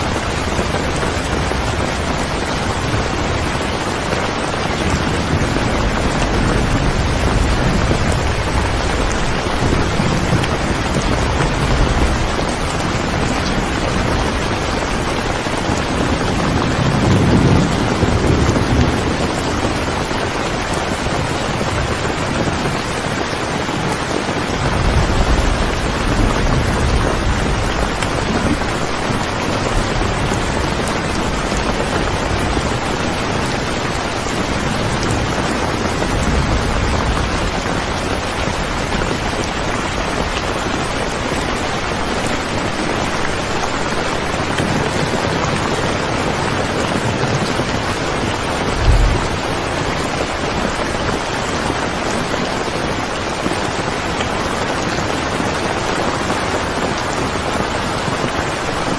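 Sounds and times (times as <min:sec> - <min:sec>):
heavy rain falling: 0:00.0 - 0:58.9
low rumbles: 0:48.0 - 0:51.1
low thump: 0:48.8 - 0:49.7.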